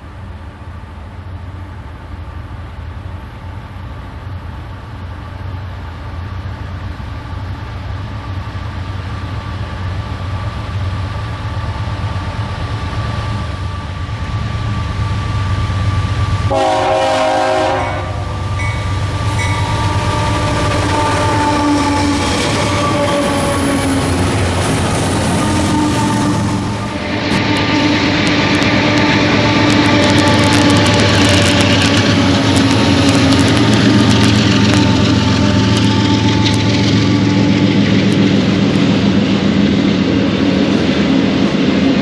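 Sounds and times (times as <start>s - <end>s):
diesel locomotive engine rumble: 0.0s - 42.0s
train horn blast: 16.5s - 38.8s.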